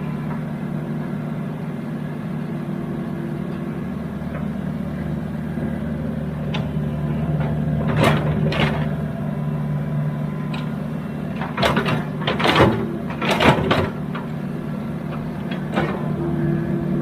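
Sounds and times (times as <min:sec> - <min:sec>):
excavator diesel engine running: 0:00.0 - 0:17.0
clanks and knocks of machinery: 0:07.4 - 0:09.0, 0:10.5 - 0:14.4, 0:15.1 - 0:16.1.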